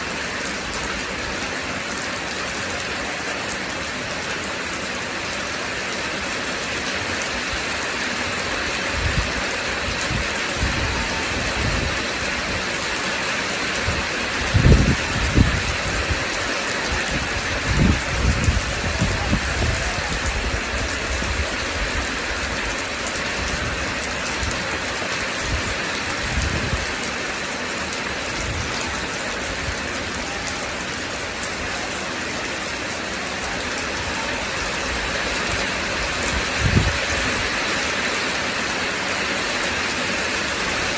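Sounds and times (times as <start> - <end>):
steady rain falling: 0.0 - 40.9
thunder rumbles: 13.8 - 22.8.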